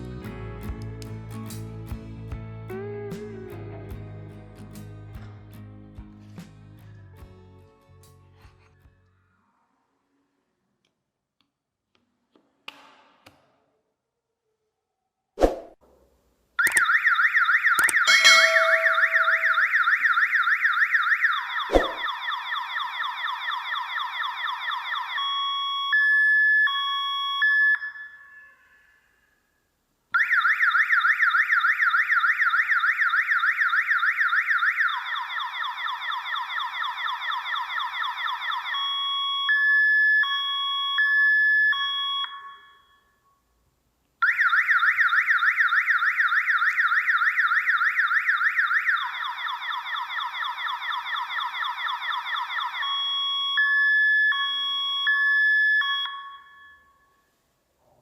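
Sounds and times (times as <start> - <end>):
electronic alarm siren: 16.6 - 29.0, 30.2 - 43.2, 44.2 - 57.2.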